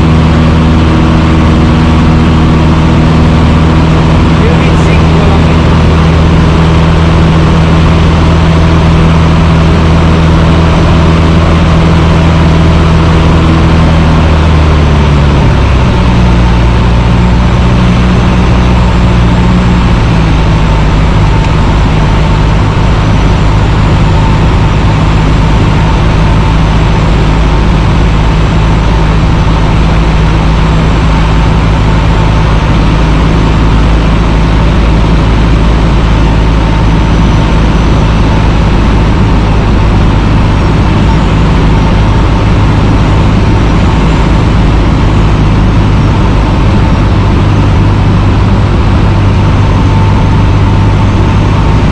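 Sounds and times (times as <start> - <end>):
thin steady whine: 0.0 - 14.2
small plane engine and propeller: 0.0 - 51.9.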